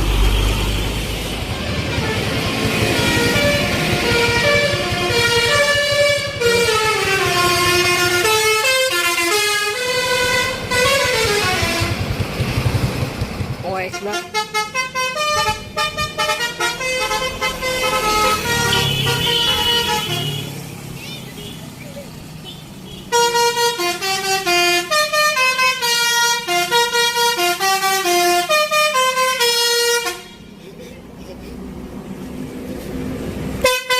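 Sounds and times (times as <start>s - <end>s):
bus horn playing melody: 0.2s - 12.3s, 13.9s - 20.6s, 22.9s - 30.6s, 33.5s - 33.9s.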